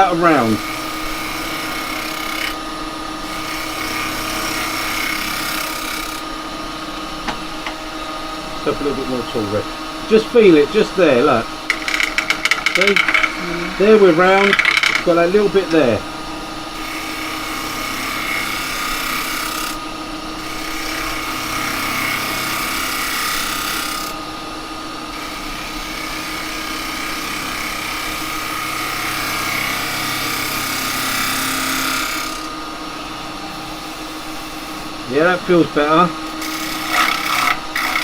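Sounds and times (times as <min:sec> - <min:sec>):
chisel scraping spinning wood: 0:00.0 - 0:02.6, 0:03.2 - 0:06.3, 0:08.8 - 0:16.0, 0:16.8 - 0:19.8, 0:20.4 - 0:24.2, 0:25.1 - 0:32.6, 0:33.8 - 0:38.0
wood lathe humming: 0:00.0 - 0:38.0.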